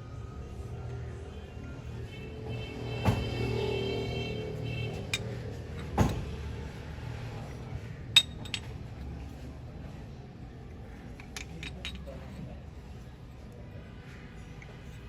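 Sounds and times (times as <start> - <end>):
metal tools clinking and knocking: 8.1 - 9.2, 11.0 - 12.5.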